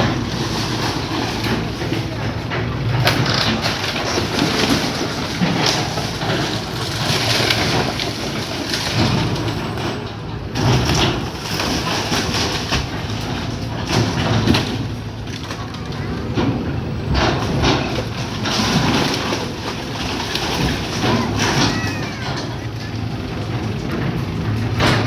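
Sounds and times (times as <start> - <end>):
structure crunching and cracking: 0.0 - 9.9
excavator engine running: 0.0 - 25.0.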